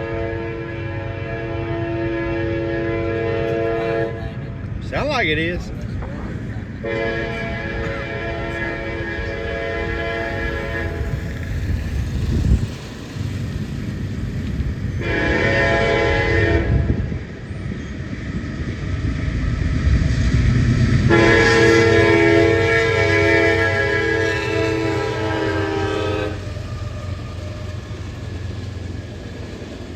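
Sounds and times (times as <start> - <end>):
locomotive air horn: 0.0 - 4.2, 6.8 - 11.8, 15.0 - 17.1, 21.1 - 27.8
train rumbling past: 0.0 - 29.9.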